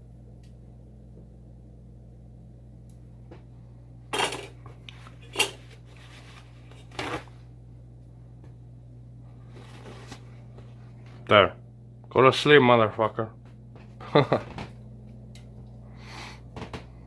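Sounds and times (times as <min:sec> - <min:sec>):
steady low hum: 0:00.0 - 0:17.0
kitchen dishes clattering: 0:04.2 - 0:04.6, 0:05.2 - 0:05.6.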